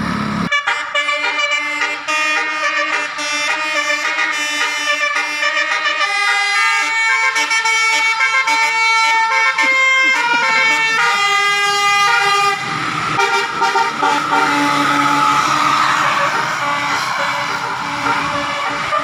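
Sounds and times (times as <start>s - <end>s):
musical air horns: 0.5s - 19.0s
rushing noise: 9.6s - 19.0s.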